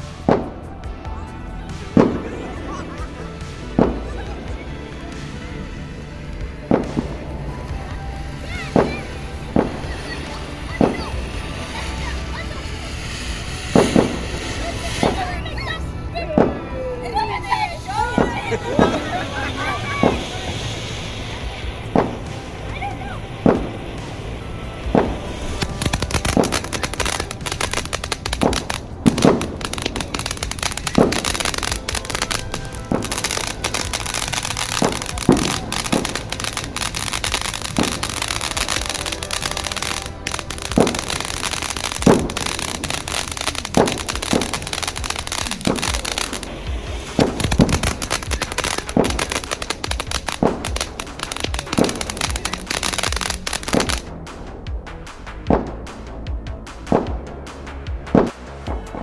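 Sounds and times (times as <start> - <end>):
fireworks bangs: 0.0 - 59.0
fireworks crackling: 0.0 - 59.0.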